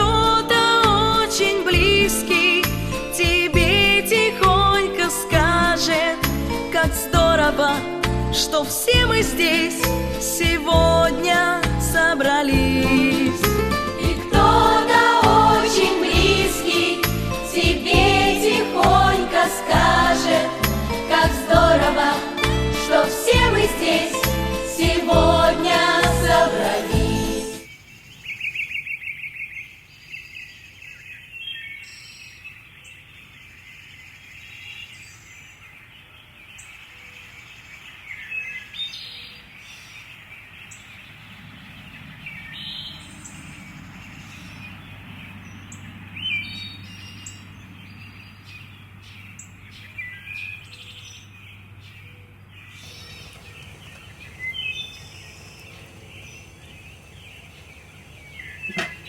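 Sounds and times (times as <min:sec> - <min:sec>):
birds chirping: 0:08.4 - 0:59.0
steady high hiss: 0:12.4 - 0:27.7, 0:52.8 - 0:59.0
low hum: 0:53.0 - 0:59.0.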